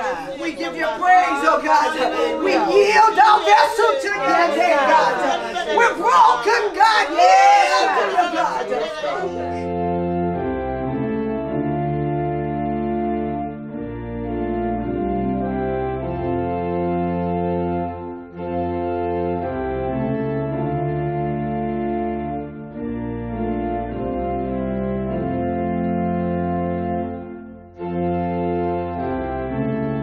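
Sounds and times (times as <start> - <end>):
slow held organ chords: 8.6 - 30.0.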